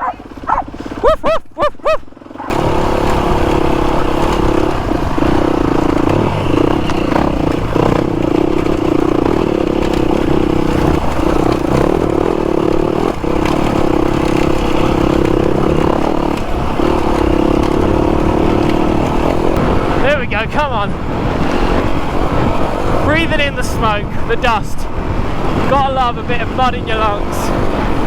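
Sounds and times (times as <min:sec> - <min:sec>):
dirt bike engine running hard: 0:00.0 - 0:28.0
bike clattering over rough ground: 0:02.1 - 0:20.8.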